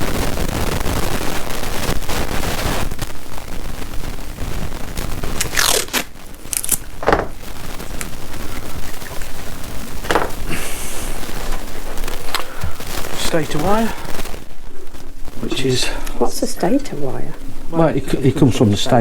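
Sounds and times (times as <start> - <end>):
hands handling wiring: 6.4 - 13.1.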